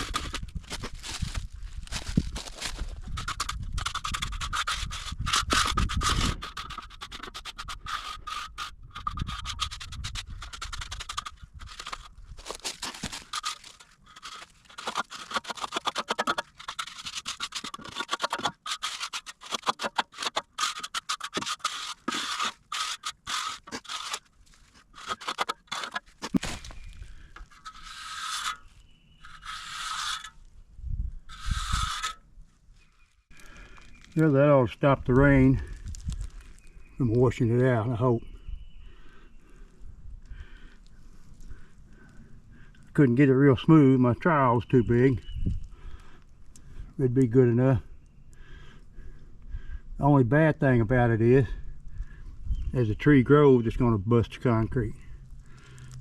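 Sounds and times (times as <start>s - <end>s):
trowel scraping wet concrete: 0.0s - 1.4s, 2.2s - 30.5s, 31.3s - 32.2s.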